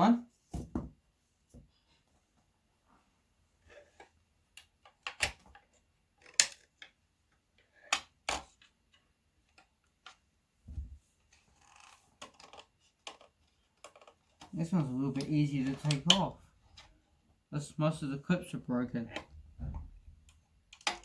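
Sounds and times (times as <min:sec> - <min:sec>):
dull knock: 0:00.5 - 0:01.0
plastic clicks and snaps: 0:04.6 - 0:07.0, 0:20.2 - 0:21.0.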